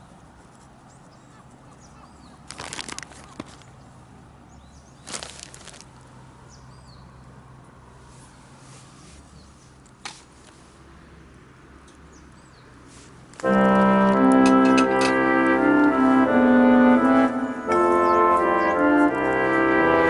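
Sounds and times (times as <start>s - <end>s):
keyboard music with organ chords: 13.4s - 20.0s.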